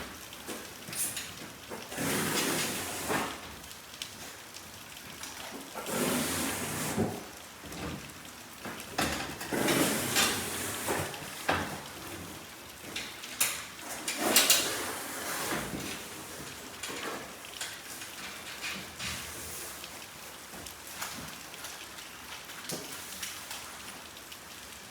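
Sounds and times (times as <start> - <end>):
tools and metal parts clattering: 12.9 - 14.9.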